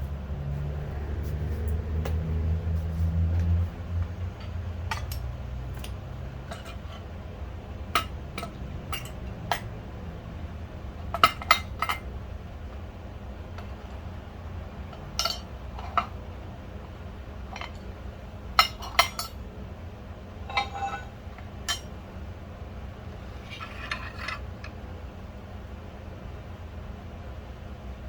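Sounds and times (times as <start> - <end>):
steady low hum: 0.0 - 28.0
metal parts and tools clinking: 4.3 - 7.0, 20.5 - 21.1.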